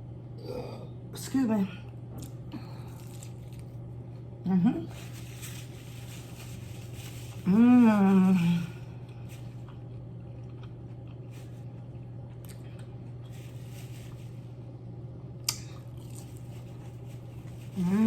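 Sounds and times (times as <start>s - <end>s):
steady low hum: 0.0s - 18.0s
soft chewing: 1.8s - 4.3s, 8.6s - 14.5s, 15.4s - 17.9s.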